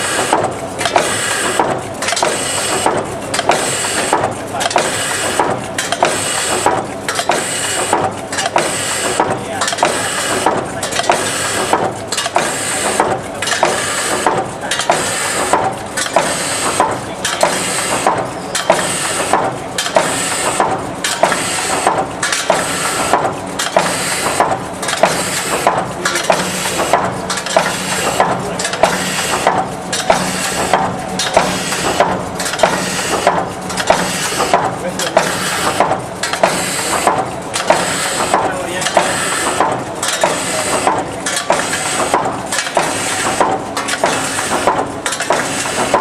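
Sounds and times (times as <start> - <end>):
sharp mechanical clack: 0.0 - 46.0
steady motor hum: 0.0 - 46.0.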